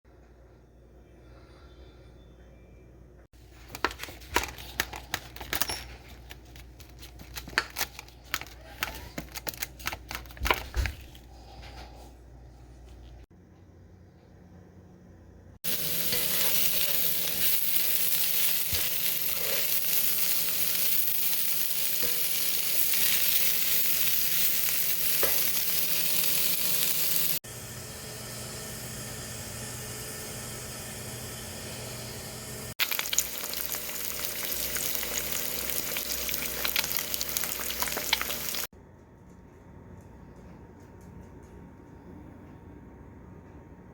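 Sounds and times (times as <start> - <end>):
food sizzling in a pan: 15.6 - 38.7.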